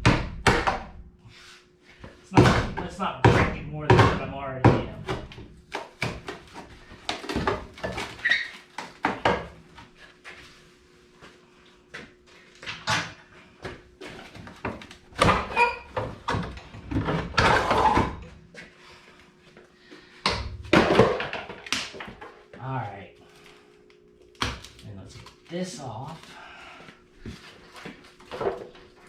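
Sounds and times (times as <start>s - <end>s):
knocks and rattles of prying metal: 2.3s - 6.4s
squeaks and creaks: 8.0s - 8.8s, 15.3s - 16.4s.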